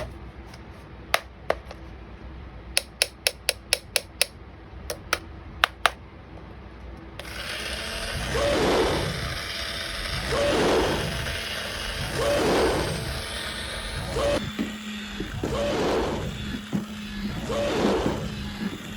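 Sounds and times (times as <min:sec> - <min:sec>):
sharp clicks: 0:02.8 - 0:06.0
toy motor whirring: 0:07.2 - 0:18.9.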